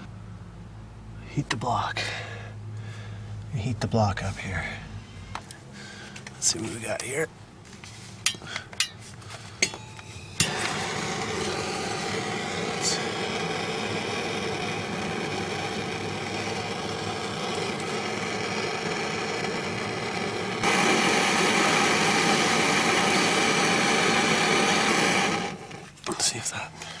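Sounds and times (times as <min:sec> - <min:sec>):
torch ignition click: 0:10.4 - 0:25.9
torch flame hissing: 0:10.4 - 0:26.0.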